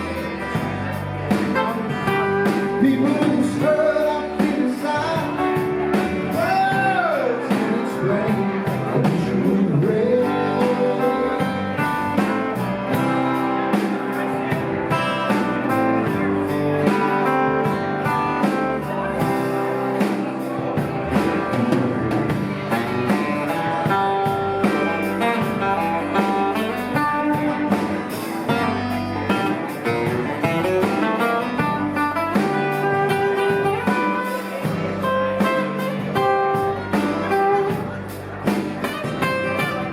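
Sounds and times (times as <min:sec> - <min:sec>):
blues guitar: 0:00.0 - 0:39.9
drum beat: 0:17.9 - 0:39.9.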